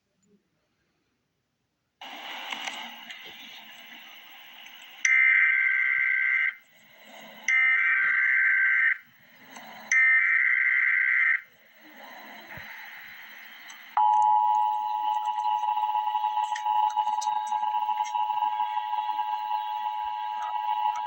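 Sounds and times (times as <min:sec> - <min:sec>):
faint noise: 0:00.0 - 0:21.0.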